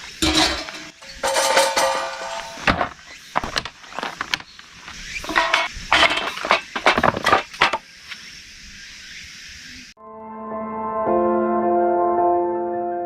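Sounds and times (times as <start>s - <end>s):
hard objects knocking and clinking: 0.2s - 4.4s, 5.2s - 7.8s.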